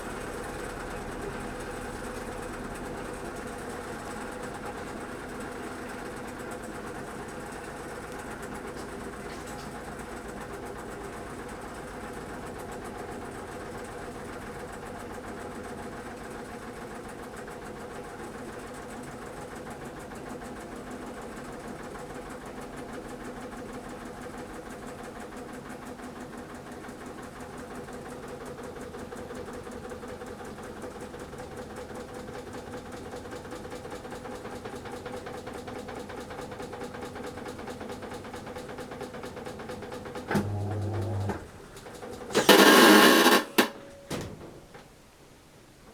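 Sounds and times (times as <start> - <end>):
washing machine spinning: 36.4 - 44.0.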